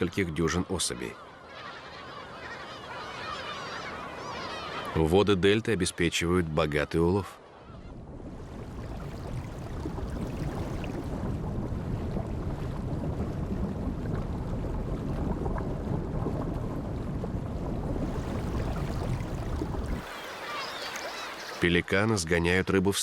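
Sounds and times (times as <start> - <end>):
water churning and splashing: 4.4 - 22.1.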